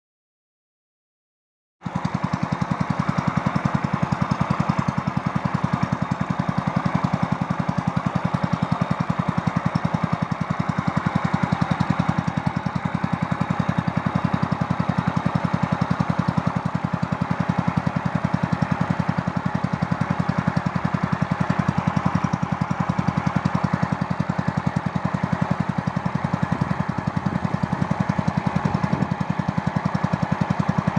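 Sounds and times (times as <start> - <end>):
small engine puttering: 1.8 - 30.9.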